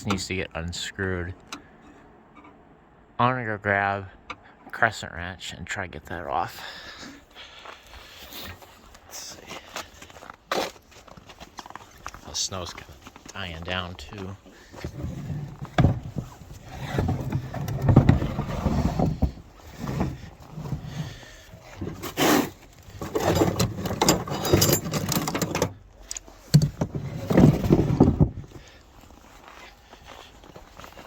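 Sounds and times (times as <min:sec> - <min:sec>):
footsteps crunching through snow: 0:28.6 - 0:31.0.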